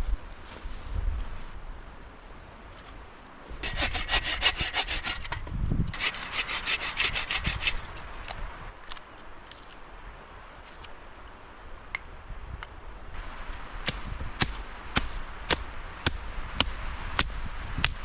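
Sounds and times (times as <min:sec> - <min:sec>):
hand saw cutting wood: 0:03.6 - 0:08.0.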